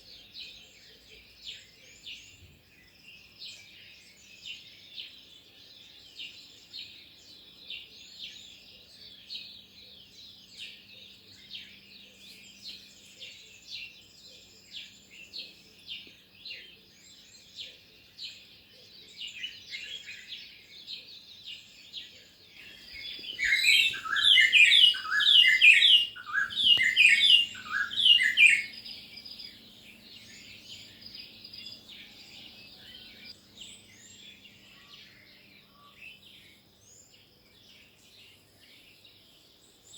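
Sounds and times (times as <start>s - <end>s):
wild birds chirping: 0.0s - 39.9s
rapid chirps from nearer bird: 22.8s - 29.3s.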